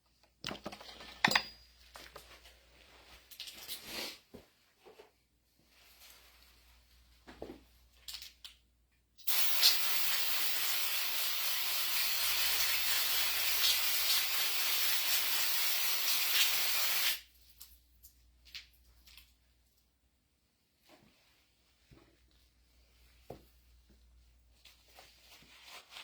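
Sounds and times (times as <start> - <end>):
spray can hissing: 9.2 - 17.2.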